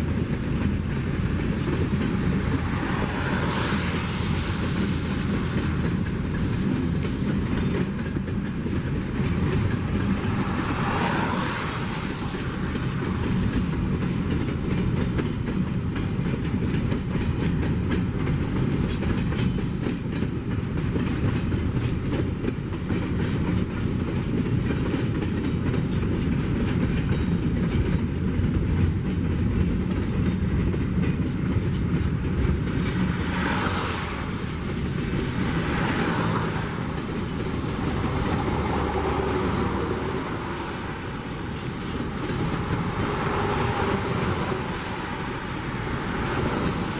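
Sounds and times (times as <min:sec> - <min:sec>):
train rumble: 0:00.0 - 0:46.9
train wheels clattering over rail joints: 0:00.0 - 0:46.9
rushing hiss: 0:09.8 - 0:13.9, 0:32.6 - 0:46.9.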